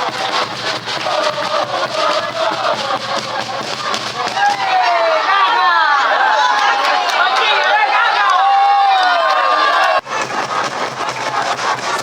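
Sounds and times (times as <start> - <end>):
steady beat: 0.0 - 4.9, 10.0 - 12.0
crowd singing and chanting: 0.0 - 8.5.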